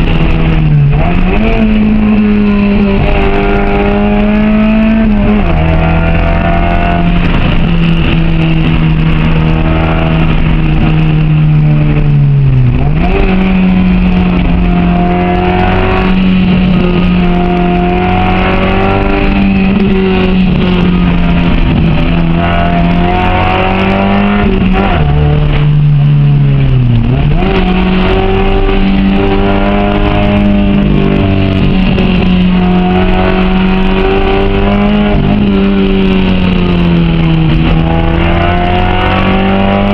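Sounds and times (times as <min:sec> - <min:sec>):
car engine revving hard: 0:00.0 - 0:39.9
gear changes: 0:00.0 - 0:39.9.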